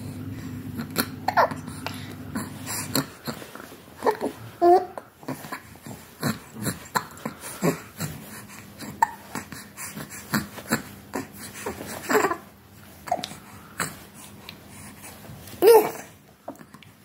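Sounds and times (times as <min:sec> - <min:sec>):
child hiccuping: 0:00.9 - 0:01.7, 0:15.6 - 0:16.1.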